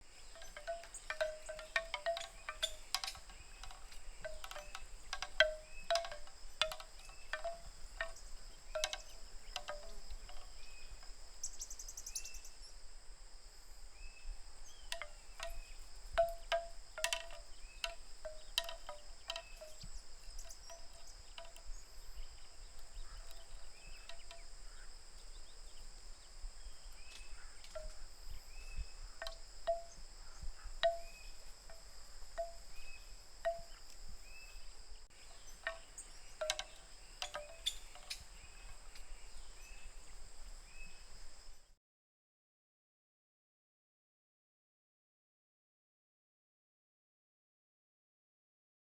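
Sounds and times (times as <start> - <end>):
bamboo wind chime clacking: 0.0 - 12.5, 14.6 - 25.7, 26.9 - 40.9.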